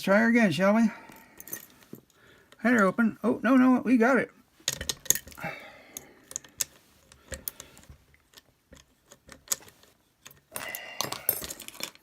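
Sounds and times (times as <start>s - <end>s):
padlock rattling: 4.6s - 5.4s, 6.2s - 12.0s.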